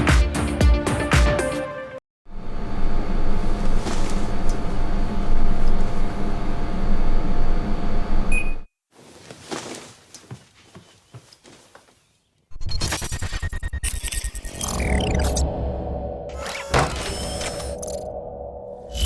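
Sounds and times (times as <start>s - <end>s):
air conditioner humming: 2.3s - 8.6s.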